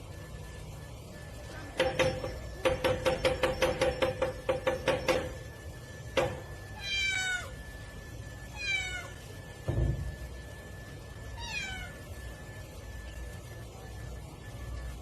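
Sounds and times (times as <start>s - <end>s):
cat meowing: 6.8s - 7.6s, 8.5s - 9.2s, 11.4s - 12.0s.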